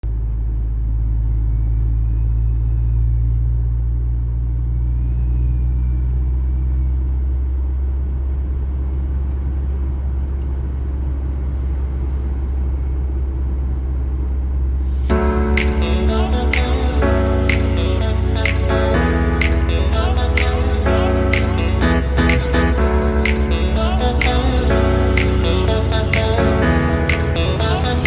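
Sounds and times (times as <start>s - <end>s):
moving vehicle rumble: 0.1s - 28.0s
low drone: 14.6s - 28.0s.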